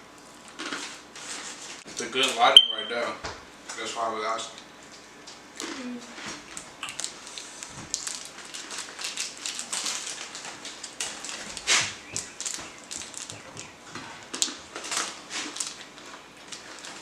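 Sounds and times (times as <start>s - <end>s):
snacks crunching: 0.4s - 1.0s, 5.6s - 17.0s.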